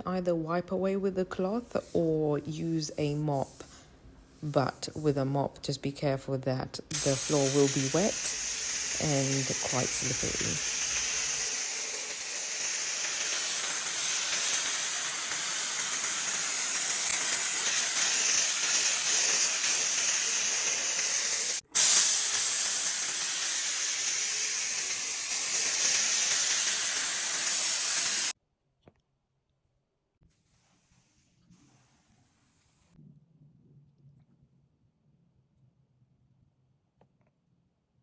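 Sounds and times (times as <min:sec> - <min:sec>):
steam cleaner hissing: 0:06.9 - 0:28.4.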